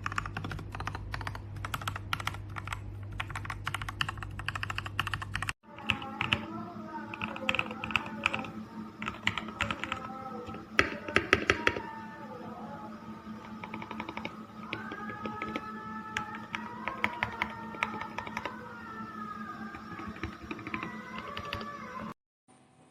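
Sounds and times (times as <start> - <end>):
typing on mechanical keyboard: 0.0 - 6.5, 7.1 - 11.9, 13.4 - 18.6, 19.6 - 21.7
background music: 5.6 - 22.2.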